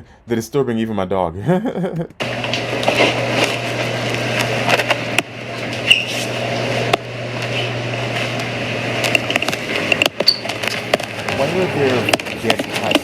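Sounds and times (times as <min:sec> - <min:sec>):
rustling and handling noise: 0:07.4 - 0:13.0.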